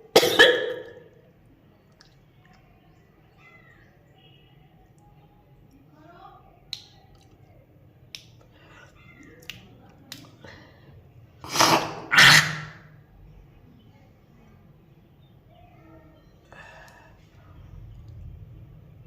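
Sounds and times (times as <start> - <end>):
woman coughing harshly: 0.1 - 1.0.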